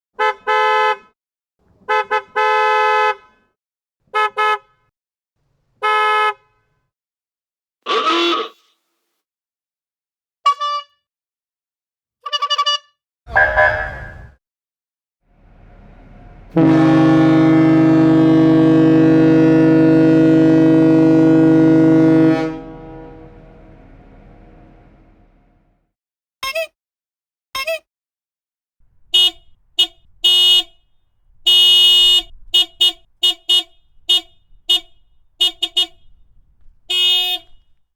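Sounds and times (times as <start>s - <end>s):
car horns honking: 1.8s - 3.2s, 13.3s - 14.4s, 16.5s - 25.6s, 28.8s - 37.8s
buzzy wavering horn blast: 13.3s - 14.3s, 15.3s - 25.7s, 28.9s - 37.8s.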